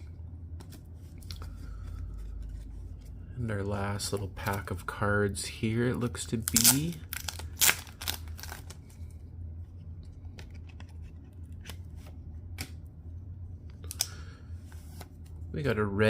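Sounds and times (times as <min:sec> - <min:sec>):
steady low hum: 0:00.0 - 0:16.0
card pack crackling and tearing: 0:06.3 - 0:08.9
cards clicking and rustling: 0:06.4 - 0:09.1, 0:10.1 - 0:12.8.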